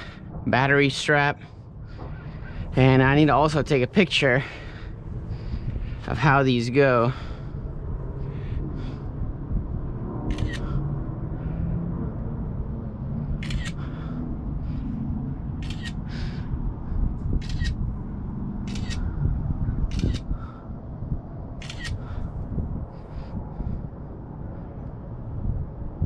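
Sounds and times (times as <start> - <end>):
steady low rumble: 0.0 - 26.0
phone camera shutter clicks: 10.3 - 10.7, 13.4 - 13.8, 15.6 - 16.0, 17.4 - 17.8, 18.7 - 19.0, 19.9 - 20.3, 21.6 - 22.0.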